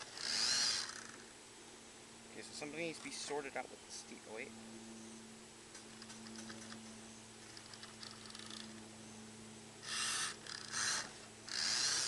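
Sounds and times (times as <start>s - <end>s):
loud rasping noise bursts: 0.0s - 1.2s, 9.8s - 12.0s
faint steady hum: 0.0s - 12.0s
toy truck clicks and ticks: 9.9s - 12.0s.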